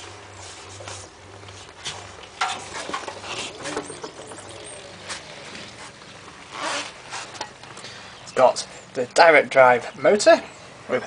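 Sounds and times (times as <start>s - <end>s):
rubbing or rustling: 0.3s - 7.7s
faint squeaks: 2.6s - 7.4s.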